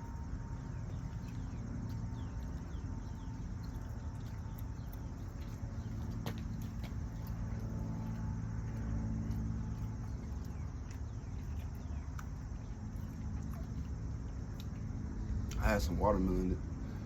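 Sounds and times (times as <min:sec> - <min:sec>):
bird chirps: 0:00.0 - 0:07.3
steady low rumble: 0:00.0 - 0:17.0.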